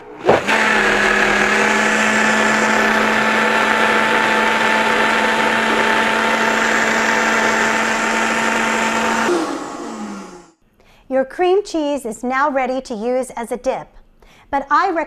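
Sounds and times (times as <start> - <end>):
blender motor whirring: 0.0 - 10.6.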